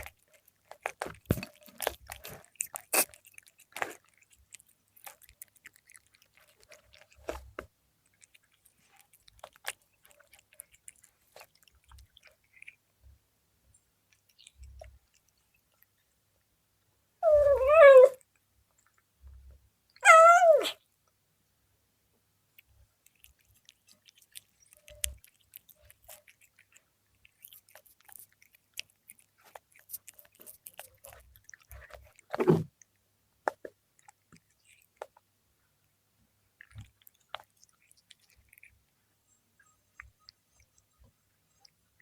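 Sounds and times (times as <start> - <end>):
cat chewing food: 0.0 - 20.0, 22.4 - 42.0
cat meowing: 17.2 - 18.2, 20.0 - 20.8.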